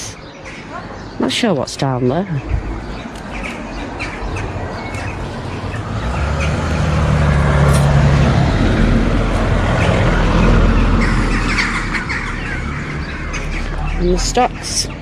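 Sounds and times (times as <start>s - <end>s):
vehicle driving past: 3.8s - 14.2s.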